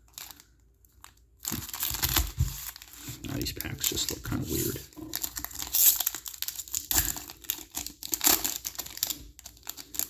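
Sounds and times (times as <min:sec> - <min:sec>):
plastic wrapper crinkling and tearing: 0:00.0 - 0:10.0.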